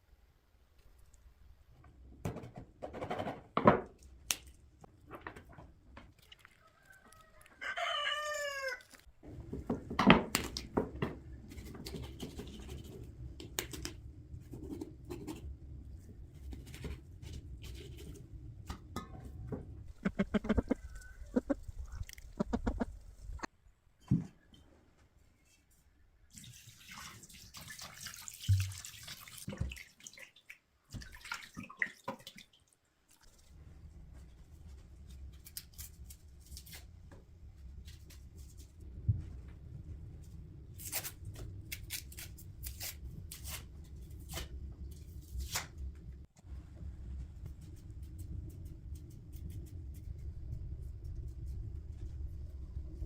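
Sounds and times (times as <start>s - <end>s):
chicken squawking: 20.0s - 23.0s.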